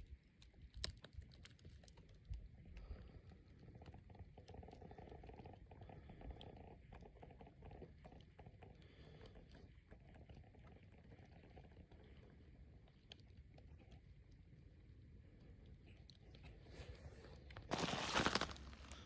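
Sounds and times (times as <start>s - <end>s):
footsteps crunching in snow: 17.7s - 19.0s.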